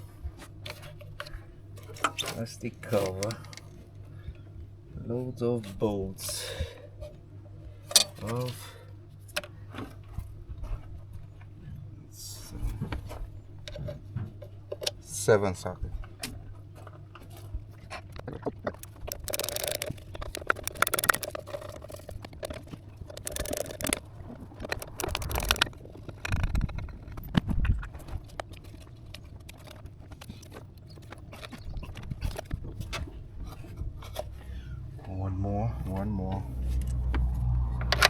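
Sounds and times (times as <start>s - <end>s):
ratchet wrench clicking: 19.2s - 21.5s, 23.2s - 24.0s.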